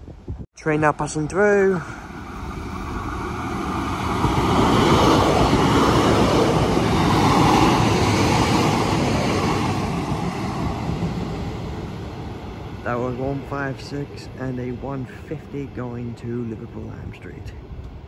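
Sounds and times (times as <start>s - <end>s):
diesel train passing: 0.8s - 18.0s.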